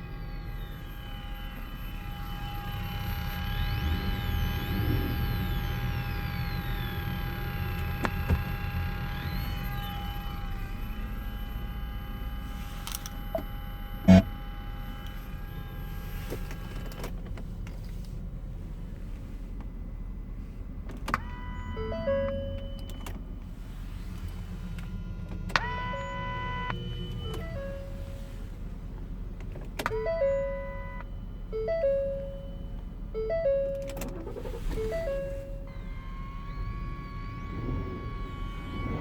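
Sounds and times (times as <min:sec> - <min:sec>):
speaker hum and static: 0:00.0 - 0:39.0
short electronic tones and blips: 0:14.0 - 0:14.3, 0:29.9 - 0:39.0.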